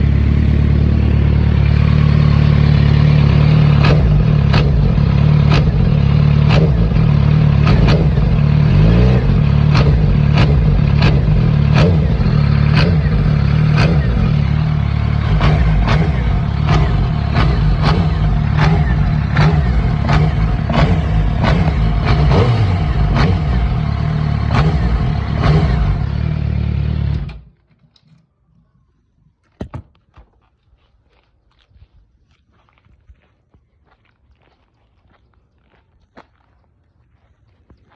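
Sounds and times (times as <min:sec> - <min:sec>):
motorcycle engine running: 0:00.0 - 0:27.5
sharp clacking engine knock: 0:15.3 - 0:22.5.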